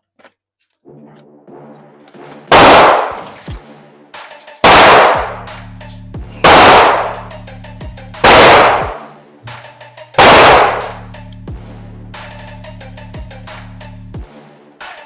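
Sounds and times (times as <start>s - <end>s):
pistol shots echoing indoors: 2.5s - 3.4s, 4.6s - 5.5s, 6.4s - 7.3s, 8.2s - 9.1s, 10.2s - 11.0s.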